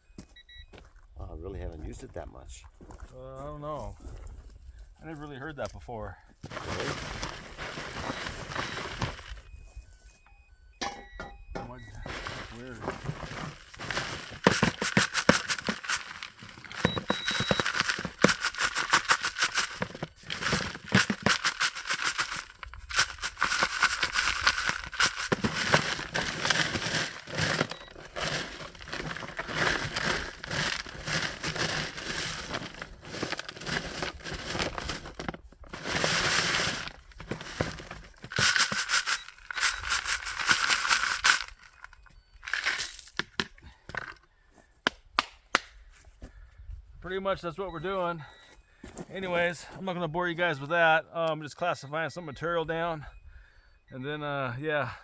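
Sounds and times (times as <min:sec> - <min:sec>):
gravel rattling on shaken screen: 0:06.4 - 0:09.4, 0:11.9 - 0:43.2.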